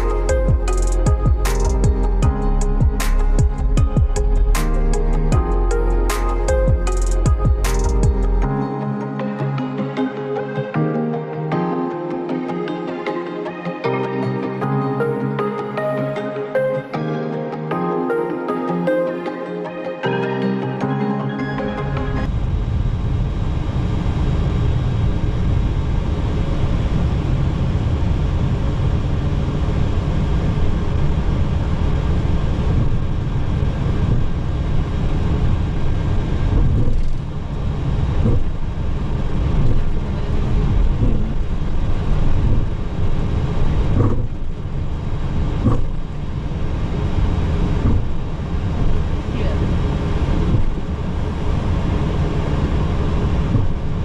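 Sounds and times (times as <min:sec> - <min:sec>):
low rumble in aircraft cockpit: 0:00.0 - 0:08.6, 0:22.2 - 0:54.0.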